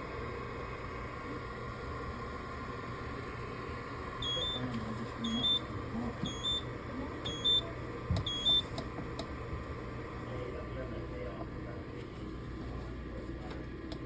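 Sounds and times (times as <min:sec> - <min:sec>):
two-tone electronic beeps: 0:05.2 - 0:05.7, 0:06.3 - 0:06.7, 0:07.3 - 0:07.7, 0:08.3 - 0:08.7.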